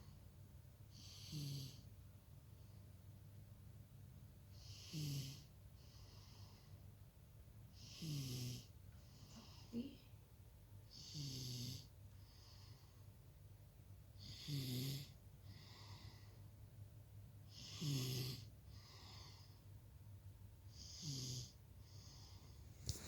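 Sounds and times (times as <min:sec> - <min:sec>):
child snoring: 0:01.0 - 0:01.8, 0:04.6 - 0:05.5, 0:07.8 - 0:08.7, 0:10.9 - 0:11.9, 0:14.2 - 0:16.2, 0:17.5 - 0:19.4, 0:20.7 - 0:22.4.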